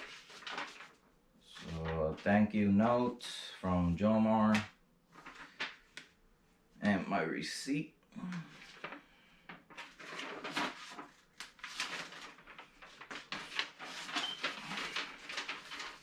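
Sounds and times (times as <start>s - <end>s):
packaging rustling and crinkling: 0.0s - 2.2s, 5.1s - 6.0s, 8.6s - 16.0s.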